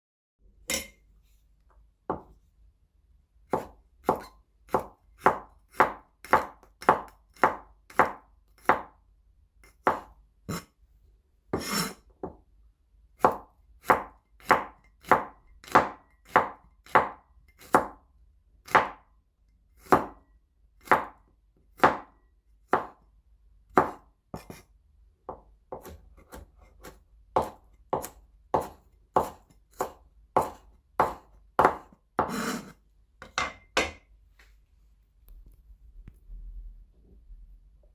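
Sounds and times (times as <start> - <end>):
knife chopping on a board: 2.1 - 2.4, 3.5 - 9.0, 9.6 - 10.7, 11.6 - 12.4, 13.2 - 18.0, 18.7 - 19.0, 19.8 - 20.2, 20.8 - 21.2, 21.8 - 22.1, 22.7 - 23.0, 23.7 - 24.6, 25.3 - 34.0.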